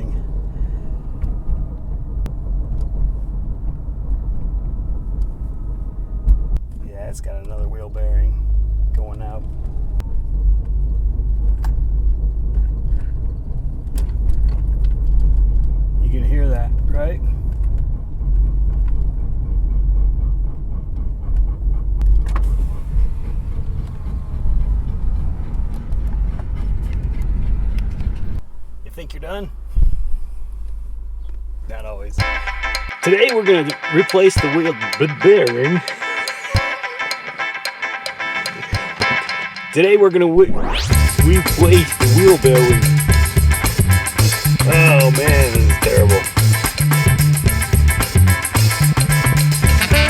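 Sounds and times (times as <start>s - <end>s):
car driving on road: 0.0s - 41.2s.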